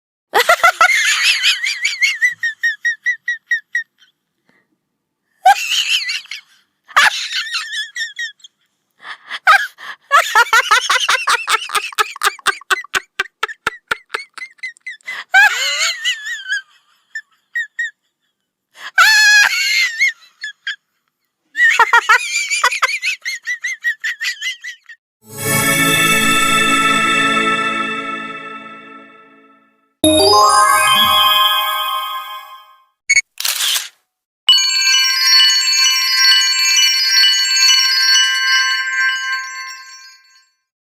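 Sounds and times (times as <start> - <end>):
squeaky giggling laughter: 0.4 - 4.1, 5.5 - 8.6, 10.3 - 18.2, 21.6 - 25.0.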